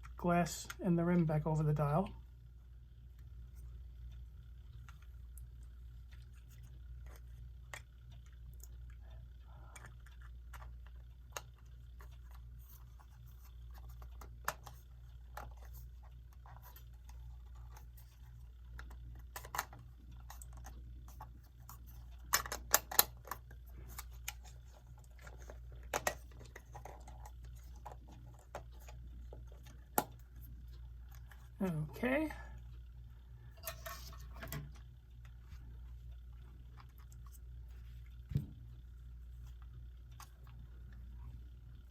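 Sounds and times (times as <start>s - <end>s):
small clicks and taps of clock parts: 3.1s - 32.9s.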